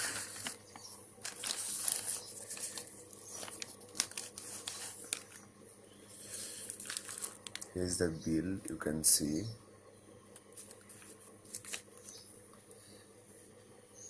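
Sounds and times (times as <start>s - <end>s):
packaging crinkling and rustling: 0.0s - 5.5s, 6.3s - 7.8s, 10.4s - 12.2s.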